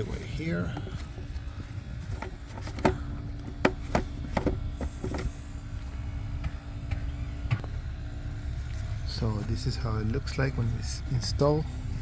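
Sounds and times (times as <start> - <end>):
steady low rumble: 0.0 - 12.0
plastic clicks and knocks: 2.1 - 5.3.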